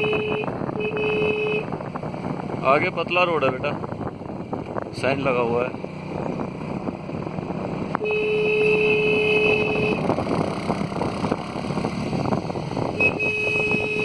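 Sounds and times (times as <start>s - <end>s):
vehicle horn: 0.0s - 1.8s, 8.0s - 10.1s, 12.9s - 14.0s
moving vehicle running noise: 0.0s - 14.0s.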